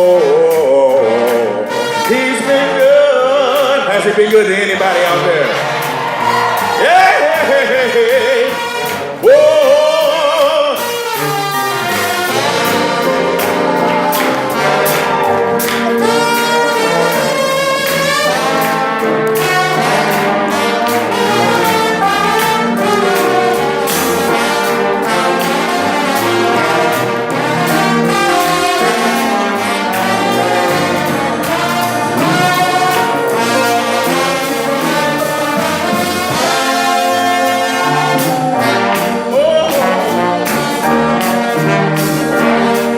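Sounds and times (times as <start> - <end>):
brass ensemble playing gospel: 0.0 - 42.9.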